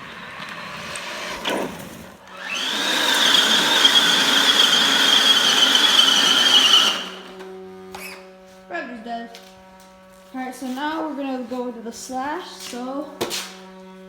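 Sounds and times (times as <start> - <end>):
electric motor high whine: 0.0 - 8.5.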